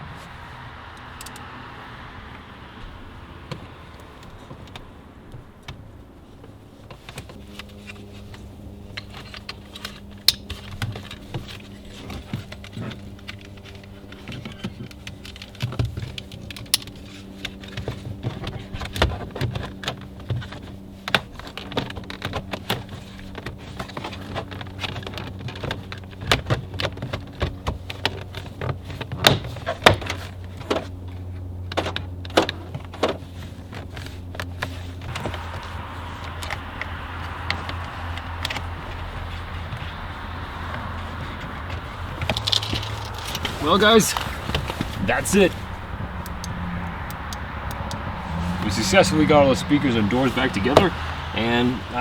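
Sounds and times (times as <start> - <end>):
steady low hum: 33.2 - 52.0.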